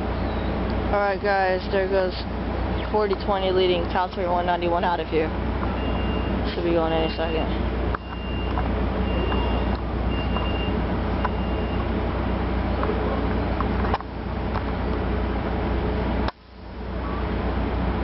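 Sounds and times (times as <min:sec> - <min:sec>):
diesel locomotive droning: 0:00.0 - 0:18.0
short high-pitched beeps: 0:05.8 - 0:06.4, 0:07.0 - 0:11.9.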